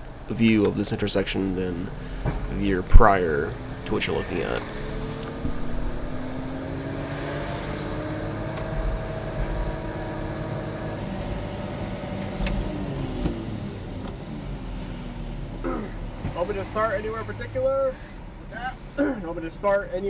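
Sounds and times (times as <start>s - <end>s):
light clicks: 0.0s - 6.6s
truck diesel engine running: 0.0s - 6.6s.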